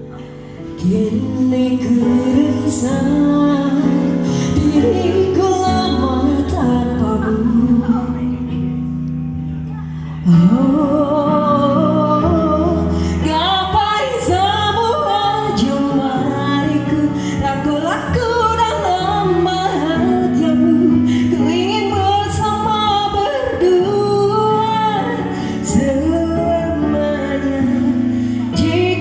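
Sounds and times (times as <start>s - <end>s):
woman singing: 0.0s - 9.0s, 9.7s - 29.0s.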